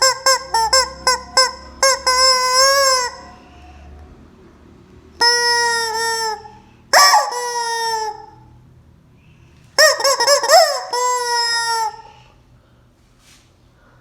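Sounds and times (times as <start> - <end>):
rubber chicken toy squawking: 0.0 - 3.7, 5.2 - 8.4, 9.8 - 12.2.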